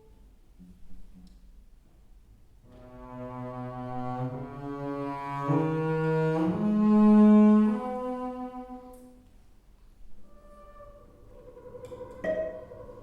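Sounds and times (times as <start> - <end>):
cello and double bass bowing: 2.7 - 9.1, 10.2 - 13.0.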